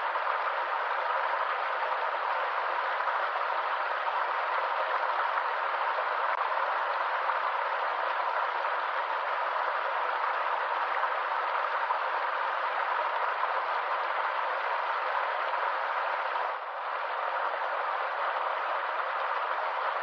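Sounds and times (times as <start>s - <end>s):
water rushing over waterfall: 0.0s - 20.0s.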